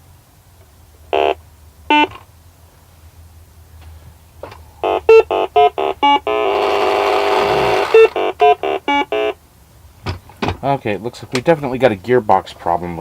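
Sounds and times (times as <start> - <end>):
toy keypad short beeps: 4.8 - 7.1, 7.7 - 9.4
buzzy electronic tone: 4.8 - 9.4.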